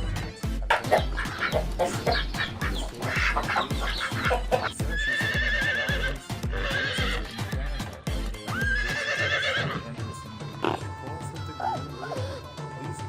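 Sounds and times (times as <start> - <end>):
background music with steady beat: 0.0 - 13.0
horse whinnying: 4.9 - 7.3, 8.5 - 9.9.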